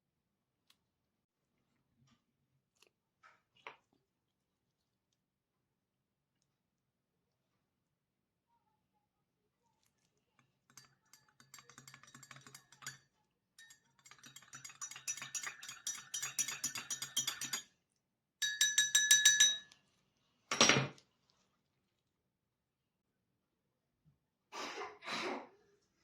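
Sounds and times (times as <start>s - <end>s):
metal spoon clinking in glass: 10.7s - 17.7s, 18.4s - 19.8s.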